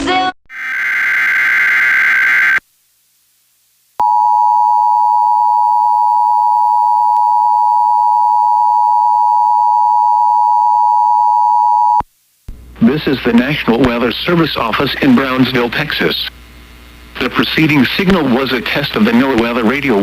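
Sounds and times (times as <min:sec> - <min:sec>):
buzzy digital data burst: 0:00.5 - 0:02.6.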